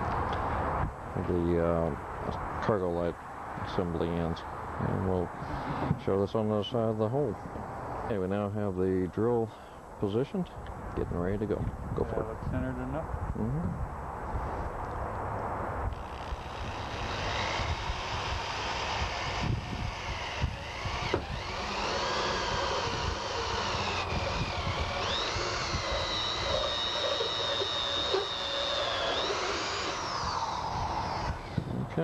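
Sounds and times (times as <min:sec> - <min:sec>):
drill hole saw screeching through metal: 0:15.9 - 0:31.6.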